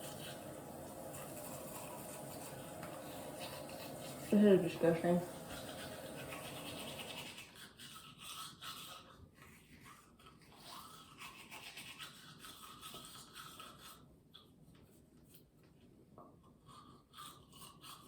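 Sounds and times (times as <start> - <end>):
toothbrush scrubbing teeth: 0.0 - 14.6, 16.4 - 18.0.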